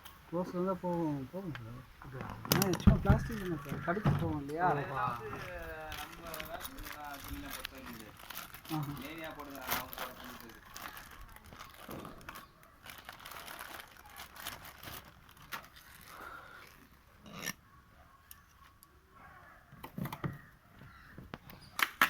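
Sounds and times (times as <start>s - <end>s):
faint voices: 1.5s - 14.5s
objects clicking and rustling: 1.5s - 16.8s.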